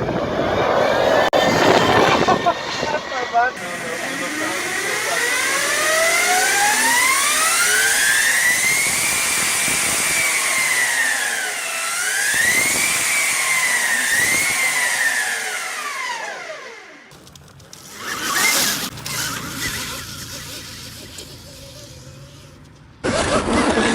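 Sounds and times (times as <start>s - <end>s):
electric motorcycle motor whining: 0.0s - 23.9s.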